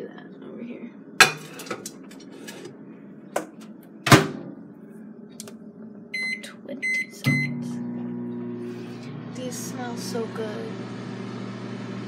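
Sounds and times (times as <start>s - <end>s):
keypad beeps: 6.2s - 7.5s.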